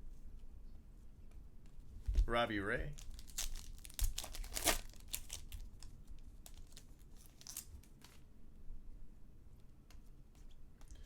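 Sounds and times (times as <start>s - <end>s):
card packaging crinkling: 2.9s - 8.2s.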